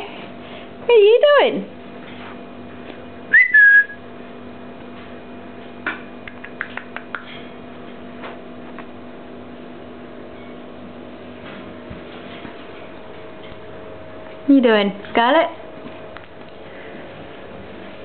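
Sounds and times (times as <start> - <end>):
steady faint hum: 0.0 - 18.0
parrot whistled call: 3.3 - 4.0.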